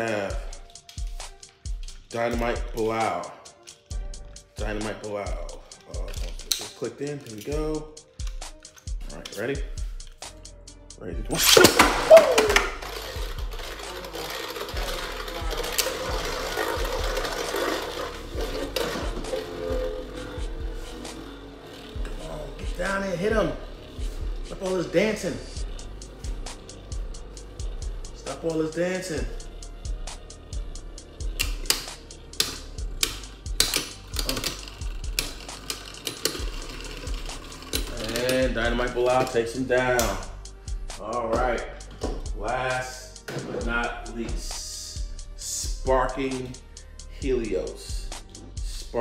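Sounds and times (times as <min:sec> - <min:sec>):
spinning tops clashing: 0:11.3 - 0:21.1
spinning tops whirring: 0:11.3 - 0:41.0
spinning tops clicking together: 0:11.4 - 0:22.3, 0:29.4 - 0:38.5.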